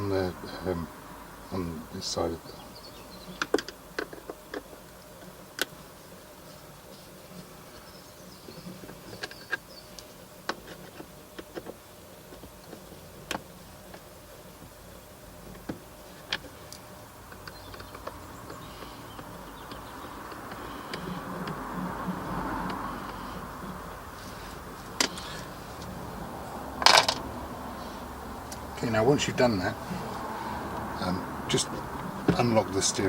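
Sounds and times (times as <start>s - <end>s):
faint background hum: 0.0s - 33.0s.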